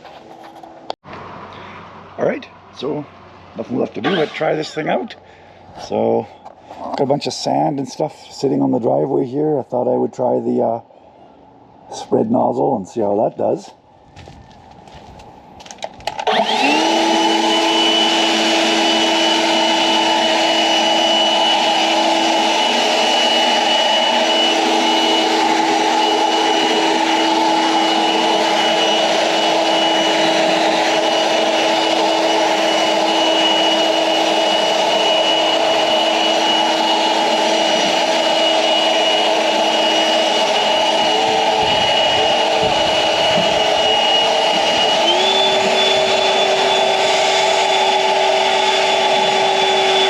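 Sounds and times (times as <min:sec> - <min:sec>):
leaf blower running: 0:16.0 - 0:50.0.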